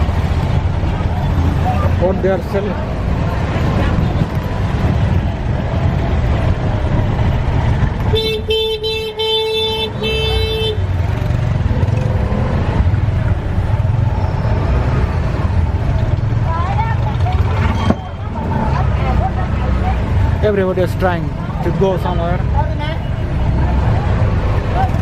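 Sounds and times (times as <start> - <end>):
street traffic rumble: 0.0 - 25.0
vehicle horn tooting: 8.1 - 10.9.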